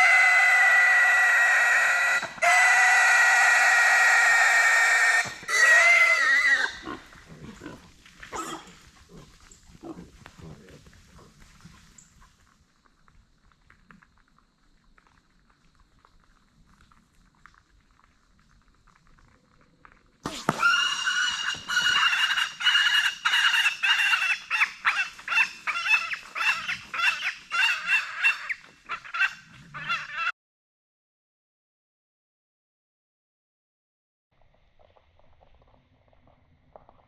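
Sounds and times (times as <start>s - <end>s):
hog squealing: 0.0s - 7.0s, 20.3s - 30.3s.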